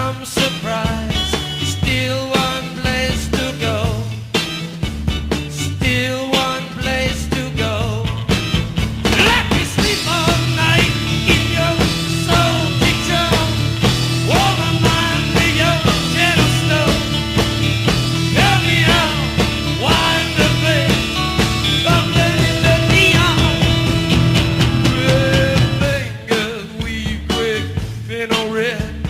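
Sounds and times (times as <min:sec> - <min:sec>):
bass line: 0:00.0 - 0:29.0
rock music with singing: 0:00.0 - 0:29.0.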